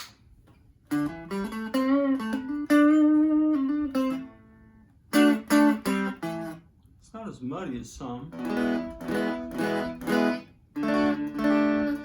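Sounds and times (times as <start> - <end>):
electric guitar lead phrase: 0.9 - 6.6, 8.2 - 12.0.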